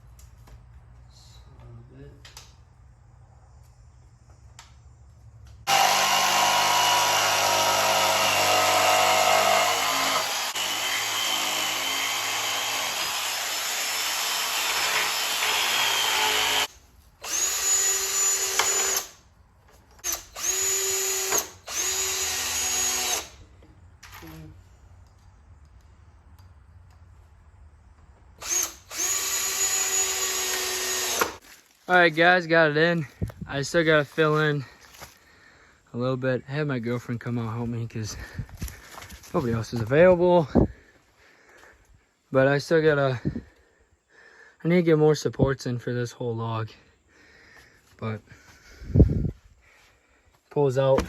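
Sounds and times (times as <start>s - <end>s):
power drill running: 5.6s - 19.2s, 20.0s - 23.4s, 28.4s - 31.4s.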